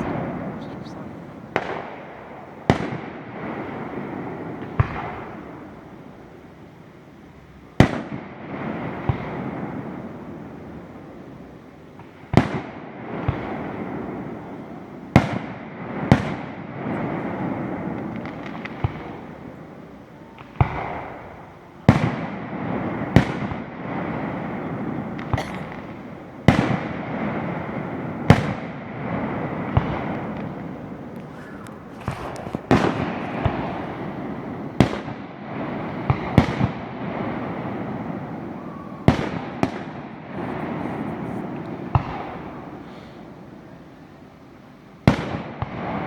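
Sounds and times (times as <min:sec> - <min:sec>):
firework shell bursts: 0:29.8 - 0:35.1.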